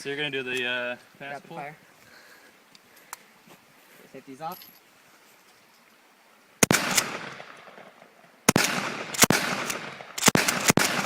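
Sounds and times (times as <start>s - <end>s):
gunshots with echo: 6.6s - 7.6s, 8.5s - 11.0s.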